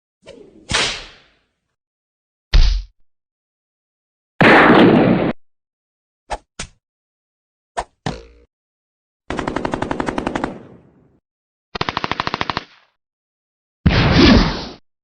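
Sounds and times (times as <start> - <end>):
single gunshots: 4.4 - 5.4
machine-gun bursts: 11.8 - 12.8.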